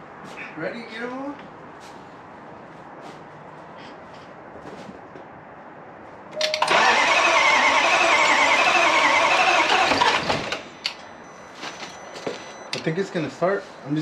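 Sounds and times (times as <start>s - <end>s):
starter motor cranking: 6.6s - 10.6s.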